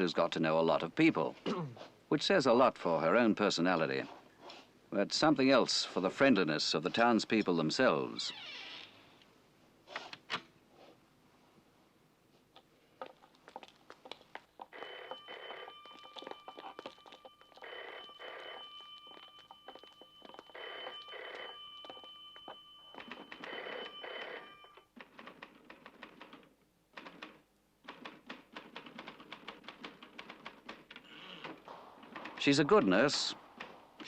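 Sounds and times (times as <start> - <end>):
telephone ringing: 14.7 - 25.0
clicks and knocks: 30.6 - 34.0.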